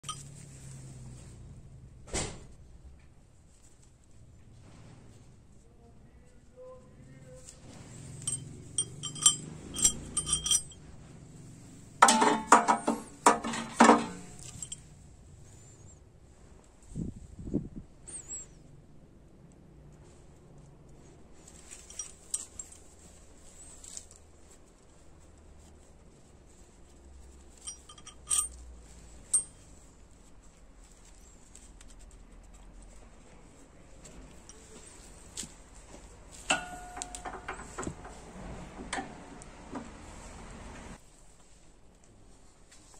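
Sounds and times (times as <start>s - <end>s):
metal parts clinking: 0.0s - 0.4s, 8.1s - 10.8s, 12.0s - 14.8s, 21.5s - 23.0s, 27.4s - 29.8s, 36.4s - 37.8s
heavy metal clanking: 8.2s - 10.8s, 12.0s - 14.8s.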